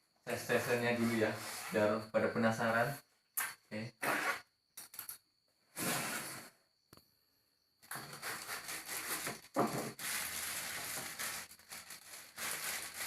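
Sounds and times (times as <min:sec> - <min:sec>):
packaging crackling rustle: 0:08.0 - 0:13.0.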